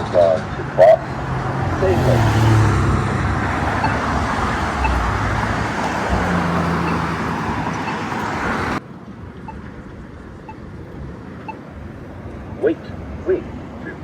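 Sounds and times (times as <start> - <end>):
road traffic: 0.0 - 14.0
pedestrian button ticking: 0.6 - 8.8.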